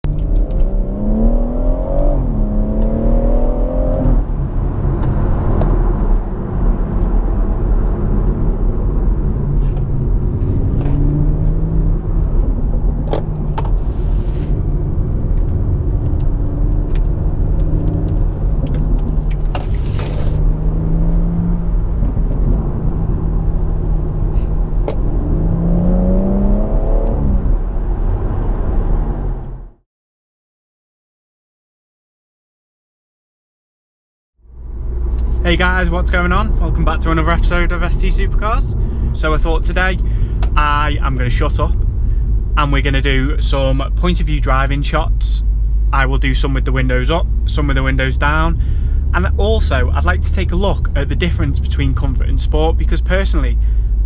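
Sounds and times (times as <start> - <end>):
car engine revving: 0.1 - 29.7, 34.7 - 54.0
exhaust cracks: 34.6 - 54.0.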